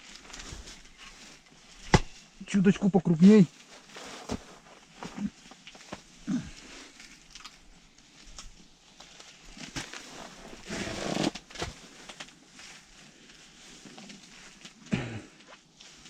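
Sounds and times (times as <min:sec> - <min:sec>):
loud rustle: 0:09.2 - 0:13.3.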